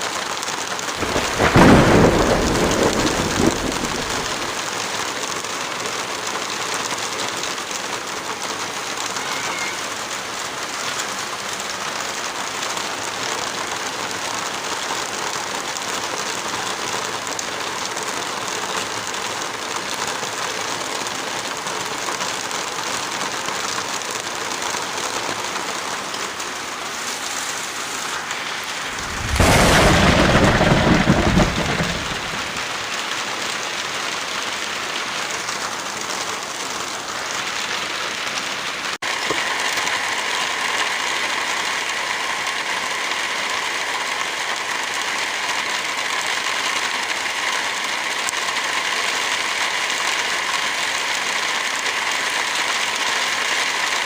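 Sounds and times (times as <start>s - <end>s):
heavy rain hiss: 0.0s - 54.0s
low rumble: 28.8s - 32.6s.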